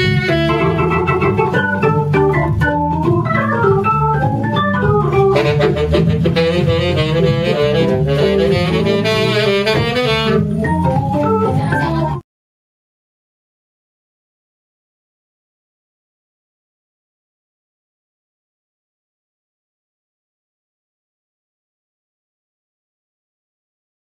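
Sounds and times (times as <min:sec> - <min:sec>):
jazz band playing: 0:00.0 - 0:12.2.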